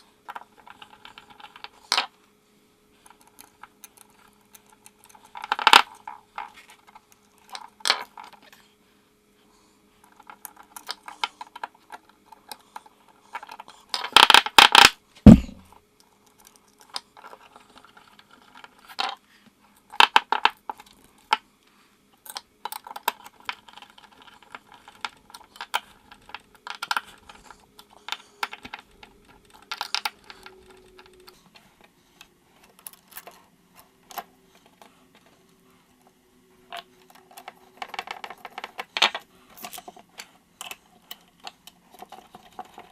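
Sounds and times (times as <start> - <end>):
dull thud: 15.3 - 15.6.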